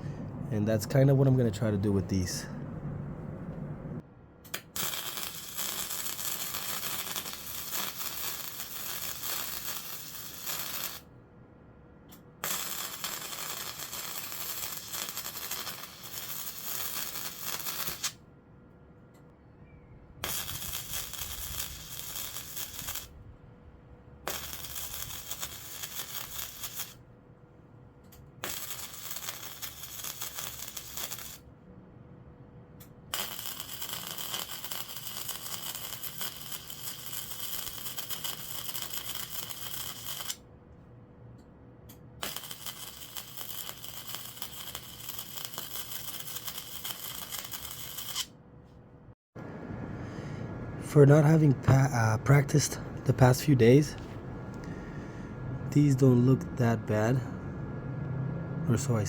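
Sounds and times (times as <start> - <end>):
faint steady hum: 0.0 - 10.4, 48.4 - 58.1
welder arc crackling: 4.6 - 11.1, 12.4 - 18.2, 20.2 - 23.2, 24.2 - 27.0, 28.4 - 31.5, 33.1 - 40.4, 42.2 - 48.3.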